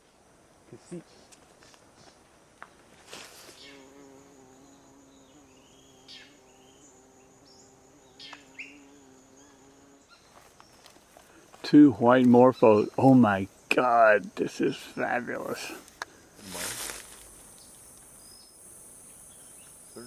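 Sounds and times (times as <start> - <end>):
flying insect buzzing: 3.0 - 10.7, 13.2 - 20.0.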